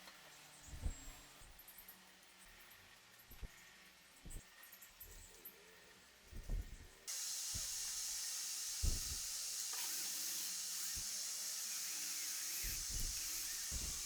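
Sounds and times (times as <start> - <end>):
steady high hiss: 7.1 - 14.0.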